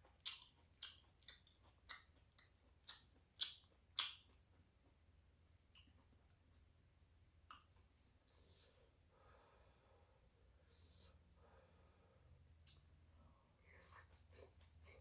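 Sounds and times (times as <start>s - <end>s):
wet chewing mouth sounds: 0.0s - 4.6s.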